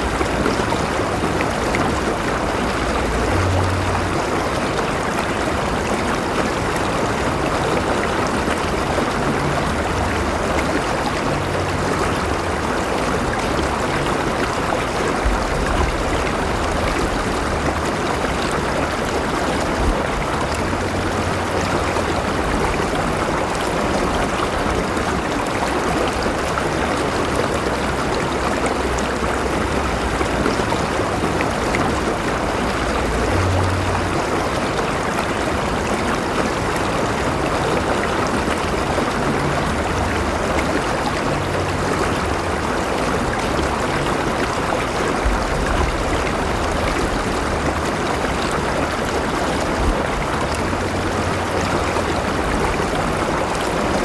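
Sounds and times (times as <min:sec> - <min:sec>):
river babbling over stones: 0:00.0 - 0:54.0
low rumble: 0:11.2 - 0:25.0, 0:41.2 - 0:54.0.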